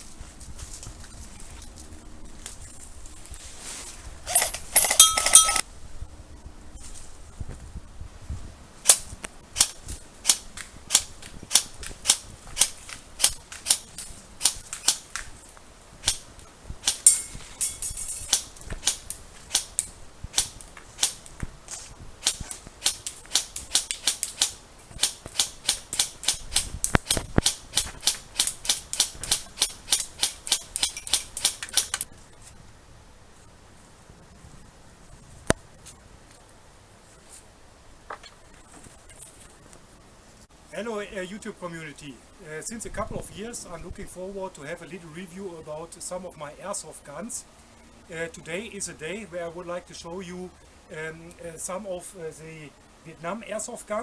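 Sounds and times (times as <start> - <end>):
airsoft gun shots: 8.8 - 15.1.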